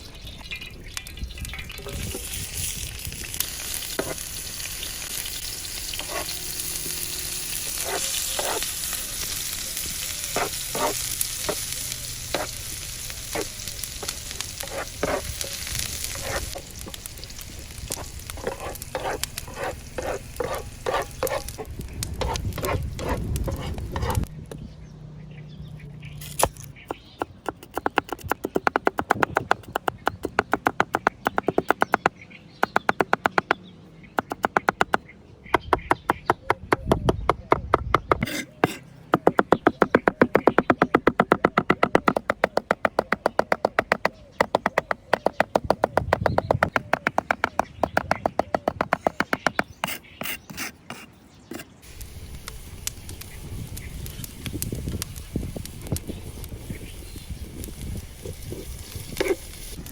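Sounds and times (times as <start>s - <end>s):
steady hiss: 51.8s - 59.9s.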